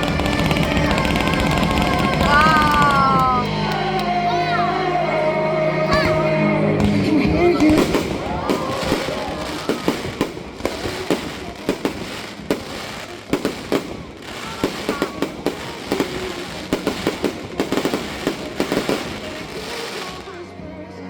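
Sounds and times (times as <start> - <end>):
fireworks bangs: 0.0 - 4.1, 5.9 - 20.5.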